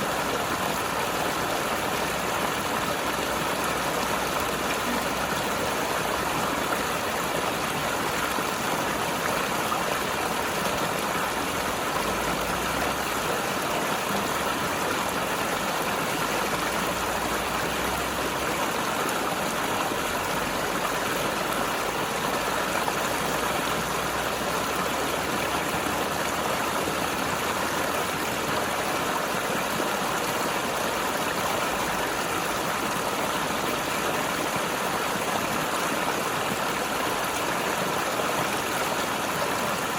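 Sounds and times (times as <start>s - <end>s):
river gurgling over rocks: 0.0s - 39.9s.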